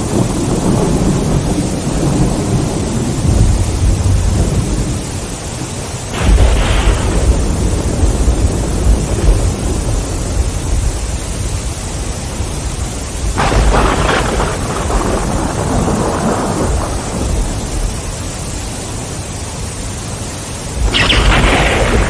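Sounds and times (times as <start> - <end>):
low thunder rumble: 0.0 - 5.2, 6.1 - 18.4, 20.8 - 22.0
steady rain: 0.0 - 22.0
sharp thunderclap: 6.1 - 11.1, 13.3 - 18.0, 20.8 - 22.0.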